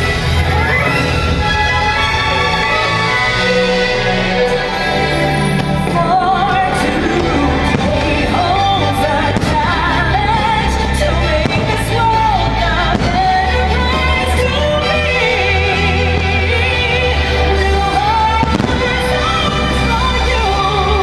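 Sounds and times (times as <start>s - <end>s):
loud music with singer: 0.0s - 21.0s
firework bangs: 5.4s - 21.0s.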